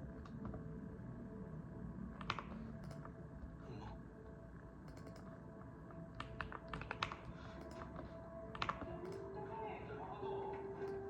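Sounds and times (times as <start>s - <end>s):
quiet background music: 0.0s - 11.0s
mechanical keyboard typing: 4.9s - 5.3s, 6.2s - 7.9s, 8.5s - 9.3s.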